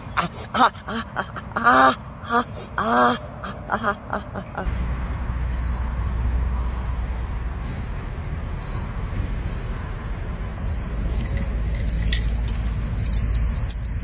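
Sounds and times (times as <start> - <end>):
insect chirping: 0.0 - 14.0
steady low rumble: 4.5 - 14.0.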